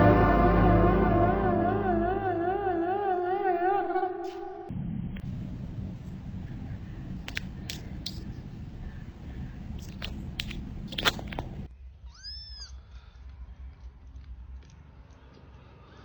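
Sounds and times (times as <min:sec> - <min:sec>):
low rumbling noise: 0:00.0 - 0:04.0, 0:04.7 - 0:11.7
sharp clicks: 0:05.2 - 0:11.7.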